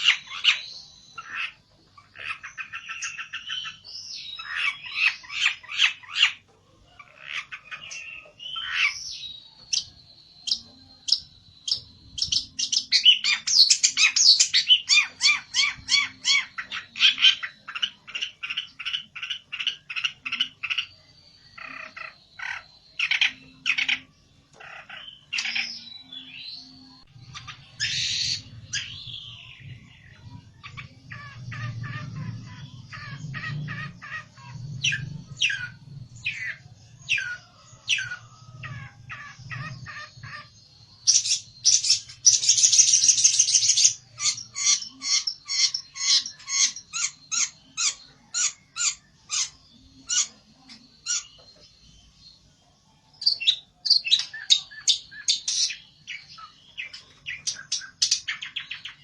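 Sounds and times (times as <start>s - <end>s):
songbird chirping and trilling: 0.0s - 59.0s.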